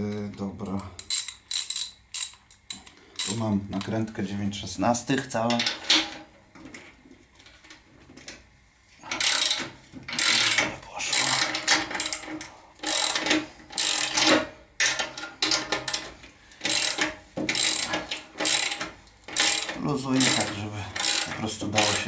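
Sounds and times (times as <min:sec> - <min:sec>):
ratchet wrench clicking: 0:01.0 - 0:03.4, 0:09.2 - 0:09.6, 0:10.2 - 0:14.4, 0:16.6 - 0:22.0.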